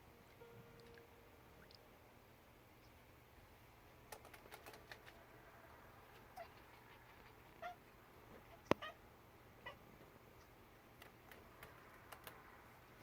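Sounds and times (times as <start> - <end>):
kittens chirping: 6.2 - 9.0.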